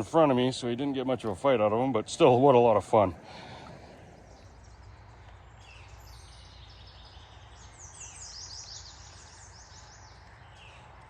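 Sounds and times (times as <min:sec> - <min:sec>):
songbird singing: 0:00.0 - 0:11.0.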